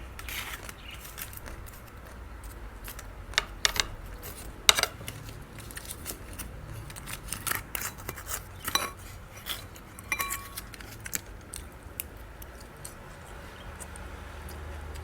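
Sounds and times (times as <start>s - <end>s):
utensils clinking on a plate: 2.4s - 11.7s.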